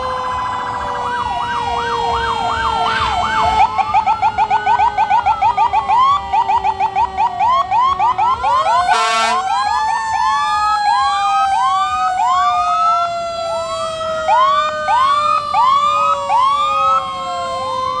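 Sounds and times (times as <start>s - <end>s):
fire truck sirens wailing: 0.0s - 18.0s
air horn blast: 8.6s - 9.6s.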